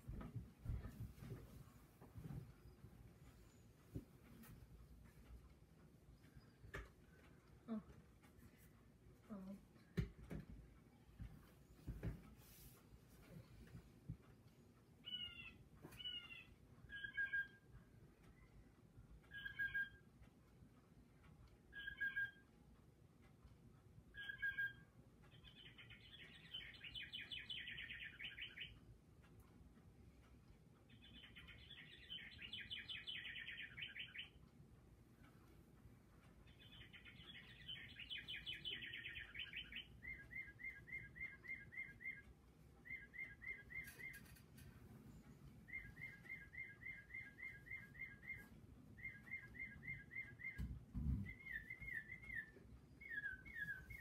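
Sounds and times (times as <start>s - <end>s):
bird singing trills: 15.0s - 17.7s, 19.3s - 20.1s, 21.7s - 22.5s, 24.2s - 28.8s, 30.9s - 34.4s, 36.4s - 44.6s, 45.6s - 54.0s.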